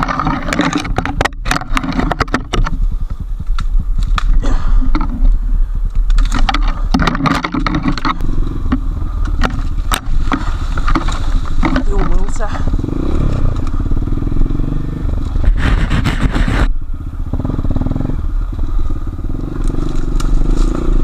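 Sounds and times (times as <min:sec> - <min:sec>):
sharp knocks and rattles: 0:00.0 - 0:05.3, 0:06.0 - 0:13.8
motorcycle engine running: 0:00.0 - 0:21.0.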